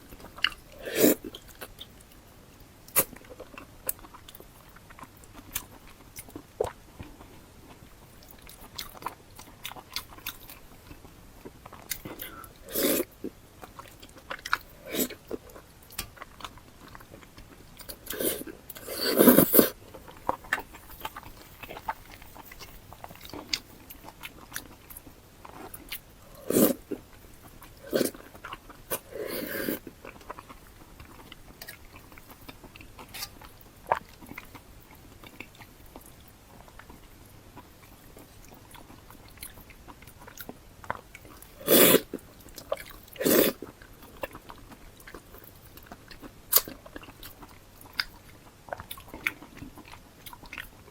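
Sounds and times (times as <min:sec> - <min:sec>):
chewing with wet clicks: 0:00.0 - 0:50.9
loud mouth noises: 0:12.1 - 0:13.1, 0:18.1 - 0:19.8, 0:26.2 - 0:27.0.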